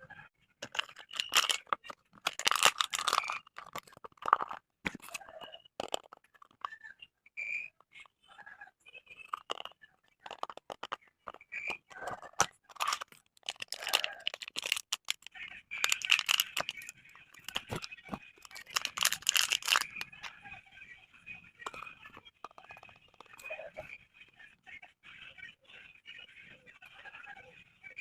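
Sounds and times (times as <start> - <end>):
packaging crinkling and tearing: 0.6 - 4.6, 12.7 - 20.3.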